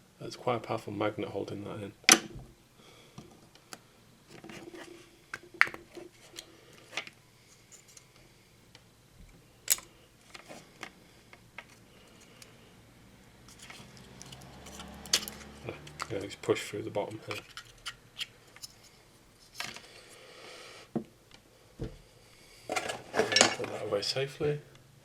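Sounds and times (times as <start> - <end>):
small hard parts clicking: 9.6 - 12.5, 13.5 - 16.2.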